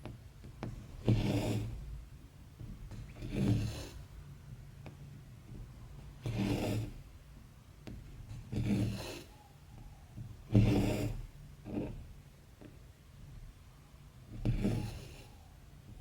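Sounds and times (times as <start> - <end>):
thread rasping through fabric: 0.0 - 2.0, 2.6 - 7.2, 7.8 - 9.4, 10.2 - 12.8, 14.3 - 16.0.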